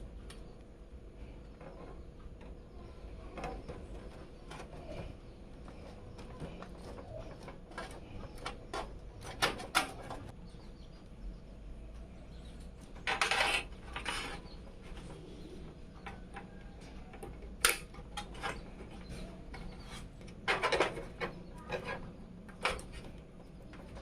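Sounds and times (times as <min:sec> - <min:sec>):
computer parts rubbing and scraping: 0:01.6 - 0:10.4, 0:13.0 - 0:16.2, 0:18.0 - 0:24.0.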